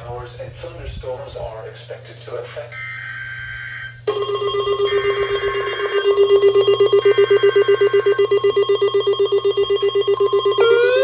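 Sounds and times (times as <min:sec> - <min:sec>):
pulsing electronic alert tone: 0:04.1 - 0:11.0.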